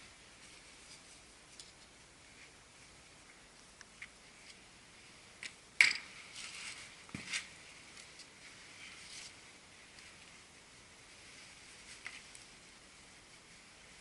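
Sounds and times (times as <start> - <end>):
rustle: 6.1 - 14.0.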